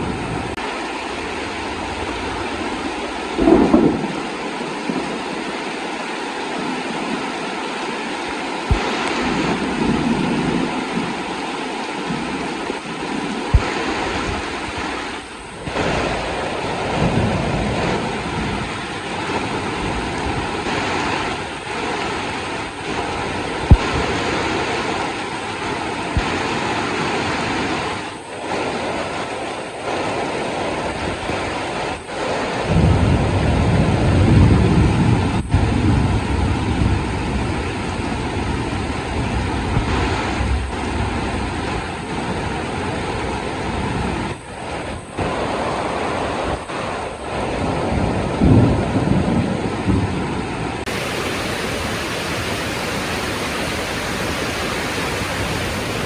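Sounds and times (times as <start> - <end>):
heavy rain falling: 0.0 - 50.0, 50.6 - 56.0
low thunder rumbles: 1.6 - 5.7, 8.7 - 11.4, 32.7 - 39.8, 47.6 - 56.0.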